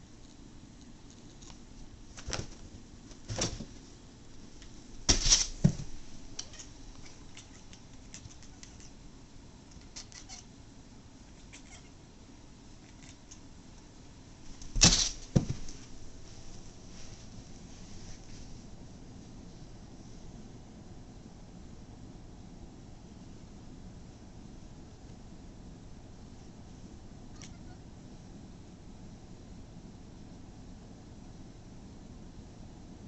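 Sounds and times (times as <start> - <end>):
cat chirping: 6.3 - 9.0, 9.7 - 10.5, 11.3 - 12.0, 27.3 - 27.9.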